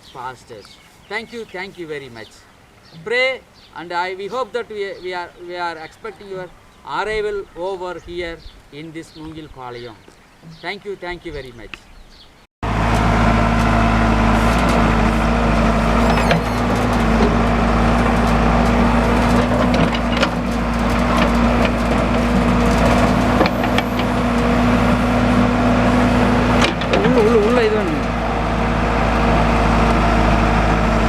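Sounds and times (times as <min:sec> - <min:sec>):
diesel engine running: 0:12.6 - 0:31.0.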